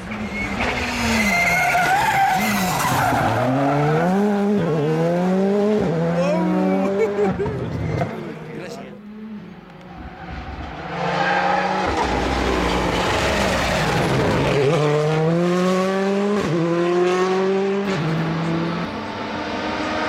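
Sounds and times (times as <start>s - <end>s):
car engine accelerating hard: 9.1s - 20.0s.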